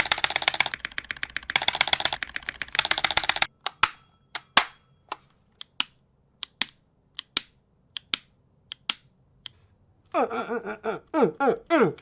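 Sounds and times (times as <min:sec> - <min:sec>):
person's voice: 0:10.1 - 0:12.0.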